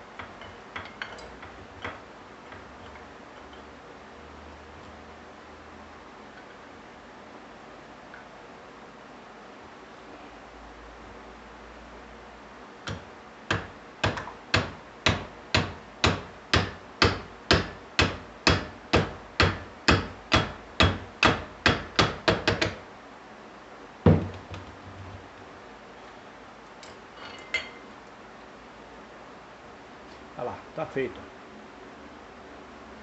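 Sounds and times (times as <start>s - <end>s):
hammer striking iron bar: 13.5s - 22.5s.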